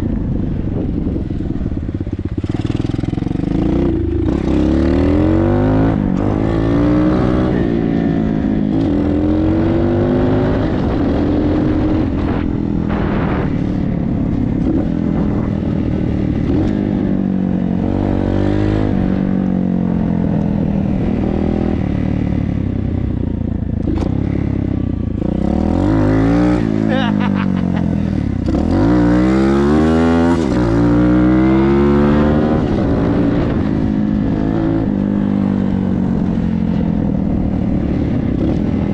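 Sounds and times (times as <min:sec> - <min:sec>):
dirt bike engine revving: 0:02.4 - 0:08.0, 0:25.2 - 0:33.8.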